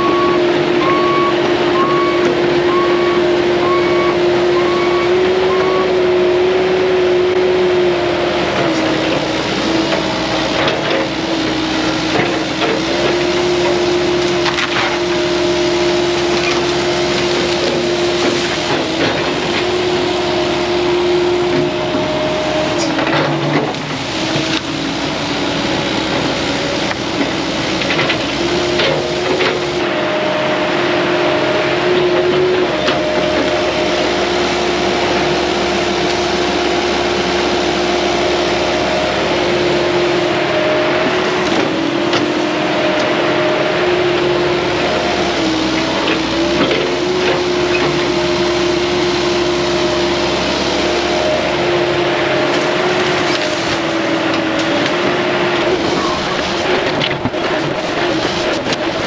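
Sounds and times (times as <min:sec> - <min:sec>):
excavator engine and hydraulics: 0:00.0 - 0:54.7
wood cracking: 0:55.6 - 0:59.0.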